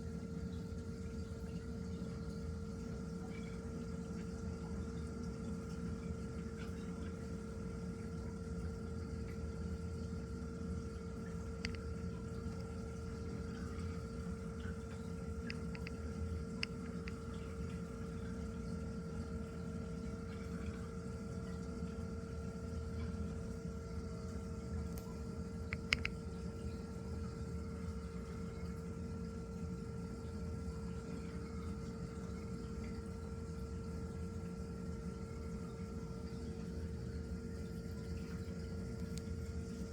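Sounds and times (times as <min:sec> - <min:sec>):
aquarium pumps humming: 0:00.0 - 0:39.9
circulating water: 0:00.0 - 0:39.9
constant whine: 0:08.7 - 0:19.1, 0:24.2 - 0:28.8
faint ticks: 0:11.2 - 0:17.8, 0:24.8 - 0:26.8.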